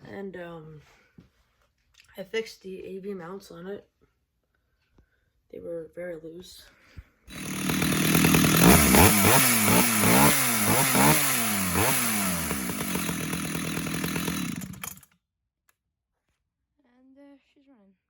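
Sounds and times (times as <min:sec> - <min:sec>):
chainsaw revving and idling: 0:07.3 - 0:15.1.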